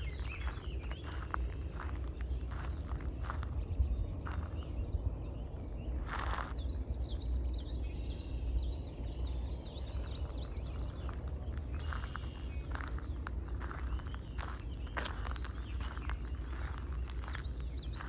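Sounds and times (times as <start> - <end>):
footsteps on a path: 0.0 - 4.8, 5.4 - 6.6, 10.4 - 18.0
songbird chirping: 0.0 - 18.0
steady low rumble: 0.0 - 18.0.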